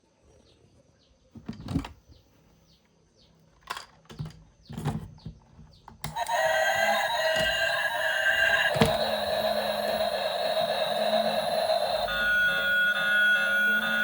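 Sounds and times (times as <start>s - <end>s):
faint high chirps: 6.1s - 14.0s
loud sound with steady tones: 6.1s - 14.0s.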